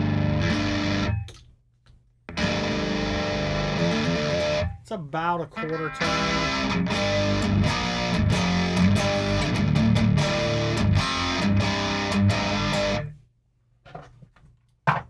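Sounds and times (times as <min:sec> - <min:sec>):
distorted electric guitar riff: 0:00.0 - 0:01.3, 0:02.3 - 0:04.8, 0:05.6 - 0:13.1.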